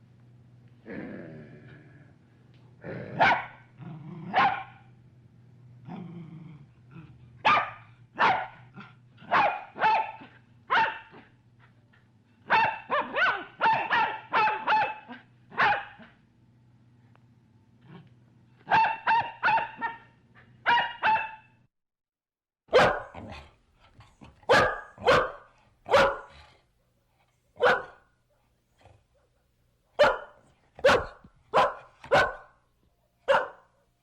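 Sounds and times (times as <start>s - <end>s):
faint low hum: 0.0s - 21.7s, 22.7s - 34.0s
dog barking: 3.2s - 3.7s, 4.3s - 4.9s, 7.4s - 11.3s, 12.5s - 16.2s, 18.7s - 21.5s, 22.7s - 23.4s, 24.4s - 26.5s, 27.6s - 28.1s, 30.0s - 32.6s, 33.2s - 33.8s.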